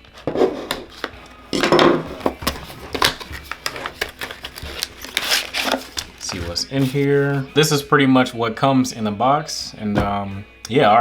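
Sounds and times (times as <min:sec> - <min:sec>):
packaging rustling: 0:00.0 - 0:07.8.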